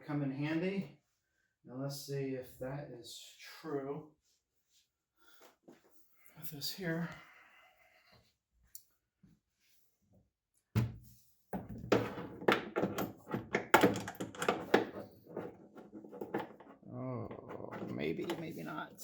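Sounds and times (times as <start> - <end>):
thunk: 10.8 - 11.0.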